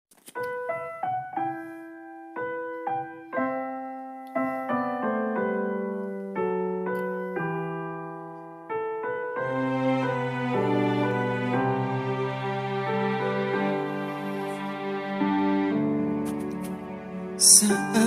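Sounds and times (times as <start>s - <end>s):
slow solo piano notes and chords: 0.3s - 12.0s.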